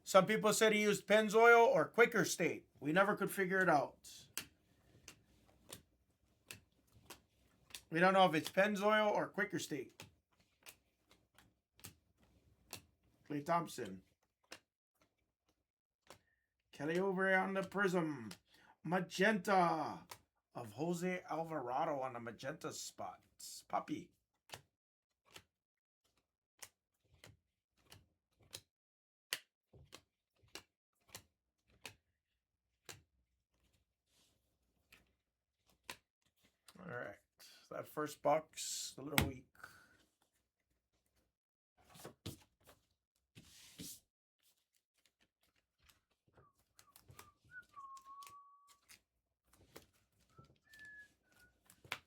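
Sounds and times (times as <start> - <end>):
cards flipped by hand: 29.8 - 32.0, 41.8 - 52.0
faint whistling: 46.4 - 48.8, 50.3 - 51.8.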